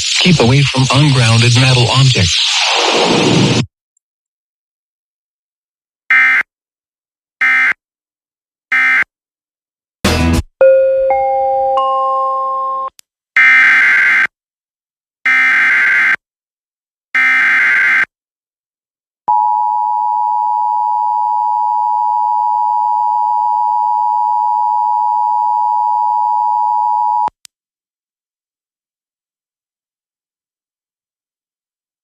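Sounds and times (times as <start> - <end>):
short digital header bursts: 0.0 - 3.7.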